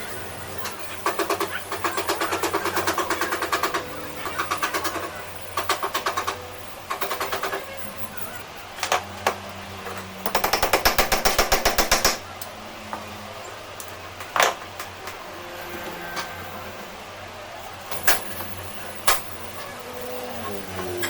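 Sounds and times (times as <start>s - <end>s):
sharp metallic knocks: 8.9s - 12.3s.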